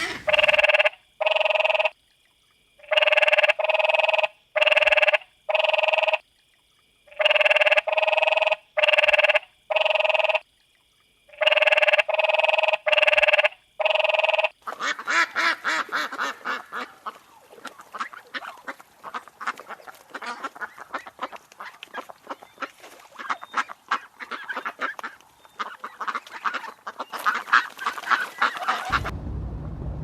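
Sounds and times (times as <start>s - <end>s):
flock of waterfowl calling: 14.6s - 29.1s.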